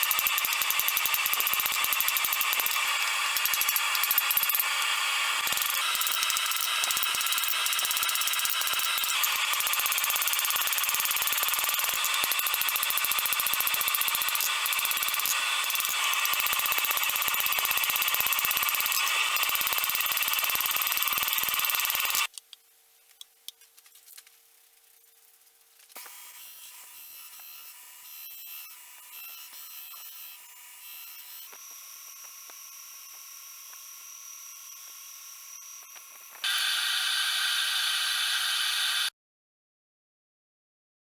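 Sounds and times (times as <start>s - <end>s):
power tool rattling: 0.0s - 22.3s.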